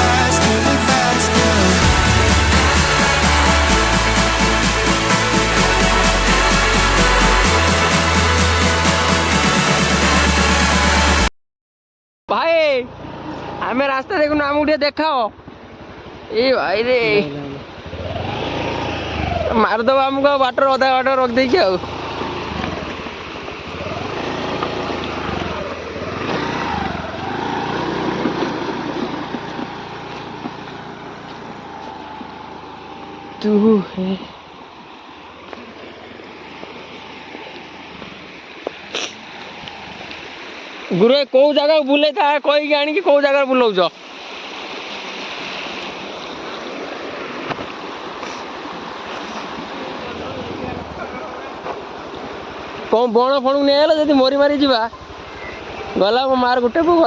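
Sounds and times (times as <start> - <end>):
flowing water: 0.0 - 11.2, 15.3 - 57.0
road and wind noise: 12.4 - 41.0, 43.8 - 57.0
small motorcycle engine revving: 17.7 - 19.6, 21.8 - 31.6.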